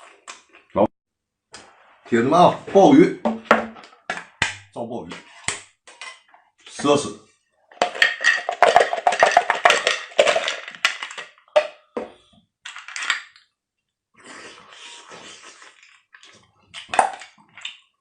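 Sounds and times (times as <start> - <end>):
clicking and crunching while eating: 15.4 - 18.0.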